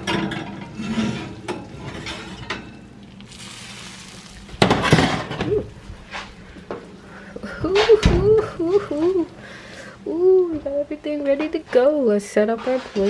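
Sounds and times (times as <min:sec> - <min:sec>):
dishes and cutlery clattering: 0:00.0 - 0:02.8.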